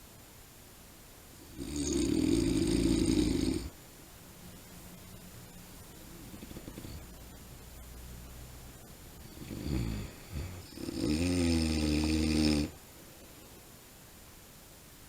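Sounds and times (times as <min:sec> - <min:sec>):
man snoring: 0:01.5 - 0:03.7, 0:09.3 - 0:12.8.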